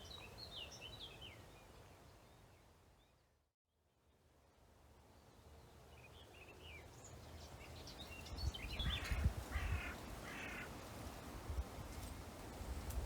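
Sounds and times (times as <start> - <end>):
harsh bird caws: 8.9 - 10.7.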